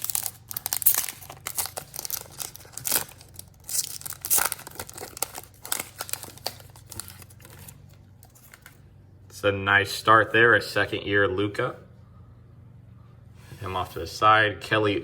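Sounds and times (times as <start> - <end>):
foil wrapper tearing and crinkling: 0.0 - 8.7.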